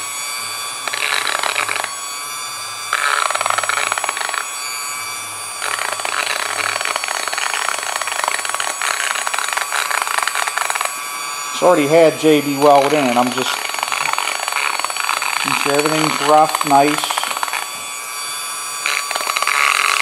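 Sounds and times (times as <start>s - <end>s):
rotary tool whining: 0.0s - 20.0s
bit rasping on metal: 5.6s - 18.0s, 18.7s - 20.0s.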